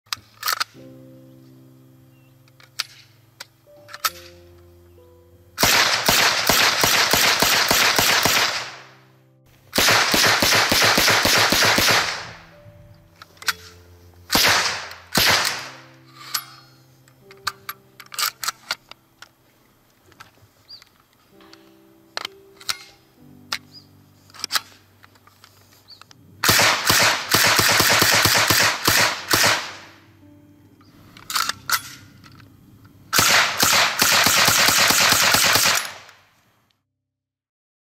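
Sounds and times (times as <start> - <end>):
background music: 0.1 - 36.1
single gunshots: 5.6 - 8.9, 9.8 - 12.4, 14.3 - 15.8, 26.4 - 30.0, 33.2 - 36.1
submachine gun firing: 5.6 - 9.0, 9.7 - 12.4, 14.3 - 15.8, 26.4 - 30.0, 33.1 - 36.2.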